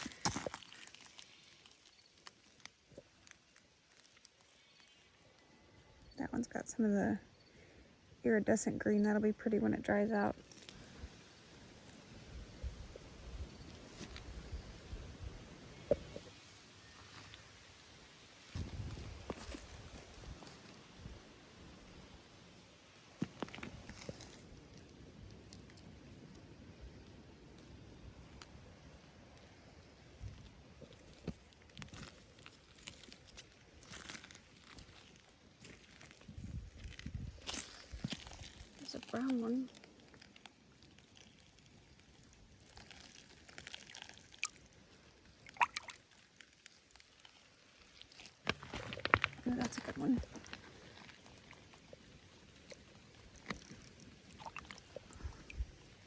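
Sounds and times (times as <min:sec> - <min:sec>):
light rain hiss: 0:09.4 - 0:56.0
faint rustles or clicks: 0:13.4 - 0:21.2, 0:21.8 - 0:26.4, 0:27.5 - 0:56.0.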